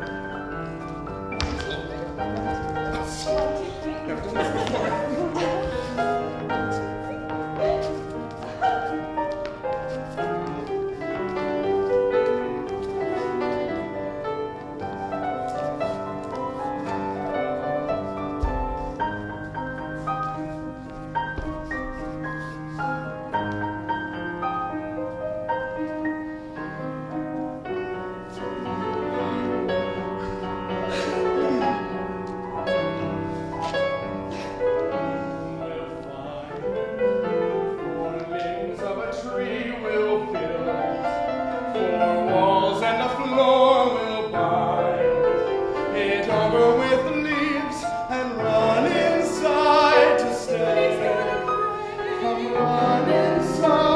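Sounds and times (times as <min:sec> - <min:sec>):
piano accompaniment: 0:00.0 - 0:53.9
wordless singing: 0:35.4 - 0:53.9.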